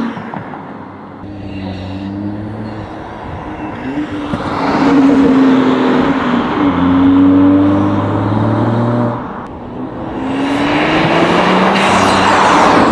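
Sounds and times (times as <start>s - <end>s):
car engine accelerating: 1.2s - 12.9s.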